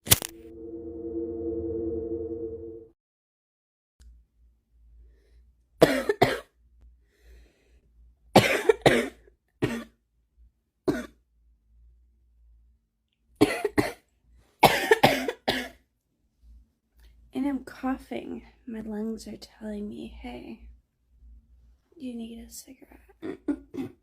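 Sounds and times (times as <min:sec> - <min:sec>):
woman coughing: 0:05.8 - 0:06.5, 0:08.4 - 0:10.0, 0:10.9 - 0:11.2, 0:13.4 - 0:14.0, 0:14.6 - 0:15.8, 0:23.2 - 0:24.0.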